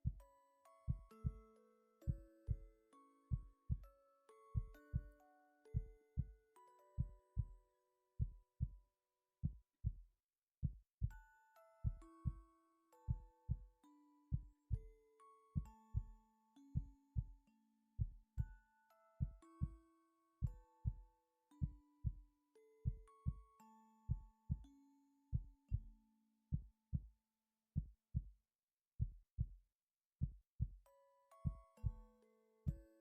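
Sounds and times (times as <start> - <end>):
human heartbeat: 0.0 - 0.2, 4.6 - 5.1, 7.0 - 7.6, 11.8 - 12.4, 15.6 - 16.2, 18.0 - 18.6, 22.8 - 23.4, 24.1 - 24.7, 25.3 - 25.9, 29.0 - 29.6, 31.4 - 32.0
soft background music: 0.0 - 9.0, 11.0 - 26.1, 30.9 - 33.0.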